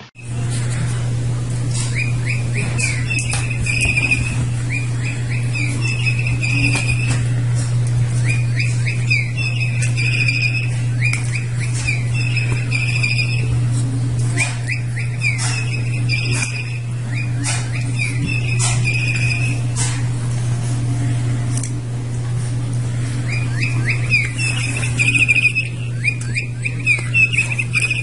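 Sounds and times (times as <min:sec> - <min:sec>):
steady low hum: 0:00.0 - 0:28.0
bird toy chirping and warbling: 0:01.8 - 0:07.3, 0:08.1 - 0:13.6, 0:14.3 - 0:19.7, 0:23.2 - 0:28.0.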